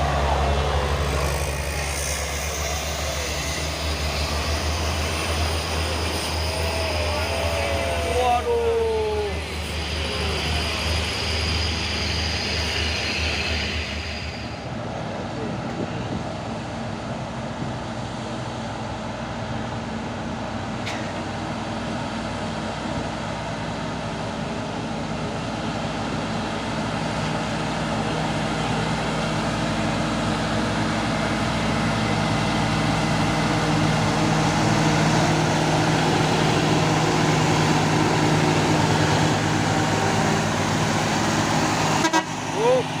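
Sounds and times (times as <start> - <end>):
heavy truck engine running: 0.0 - 43.0.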